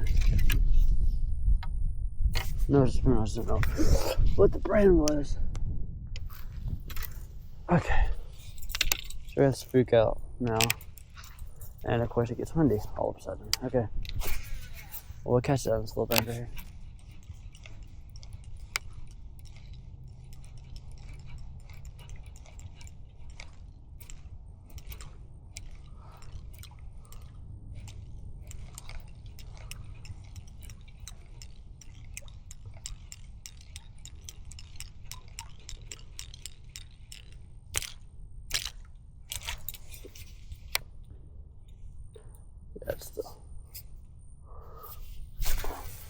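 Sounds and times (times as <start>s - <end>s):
handling clicks and crunches: 0.0s - 0.9s, 6.2s - 41.1s
wind buffeting microphone: 0.0s - 46.0s.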